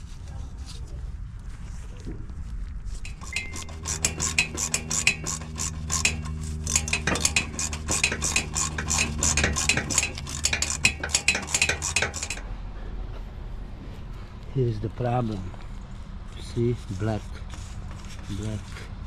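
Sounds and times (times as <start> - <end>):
metallic tool clinks: 3.1 - 3.8
ratchet wrench clicking: 3.1 - 12.5.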